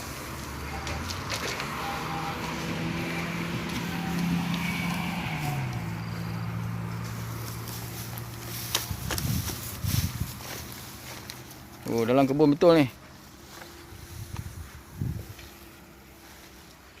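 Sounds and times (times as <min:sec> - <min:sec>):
motor engine running: 0:00.0 - 0:11.9.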